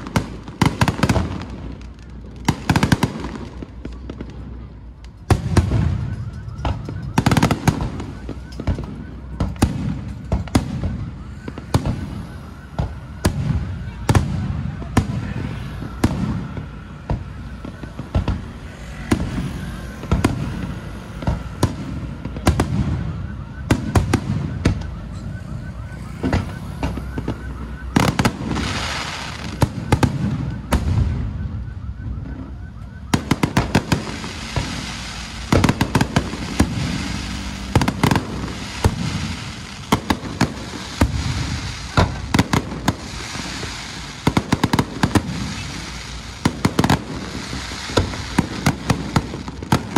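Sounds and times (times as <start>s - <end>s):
fireworks bangs and booms: 0.0s - 49.9s
firecracker cracks: 32.9s - 49.9s.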